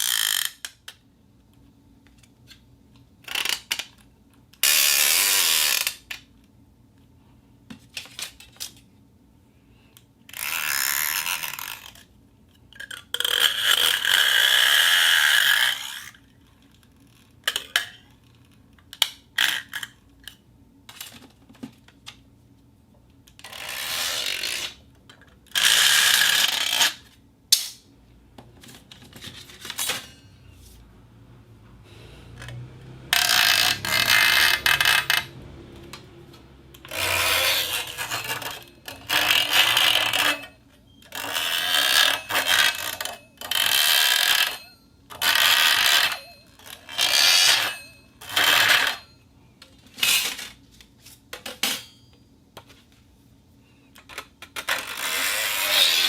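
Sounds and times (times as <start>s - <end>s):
steel sheet scraping: 36.8s - 40.5s.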